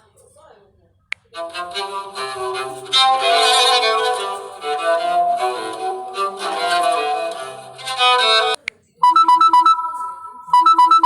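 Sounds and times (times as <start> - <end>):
alarm tone violin melody: 1.4 - 11.0.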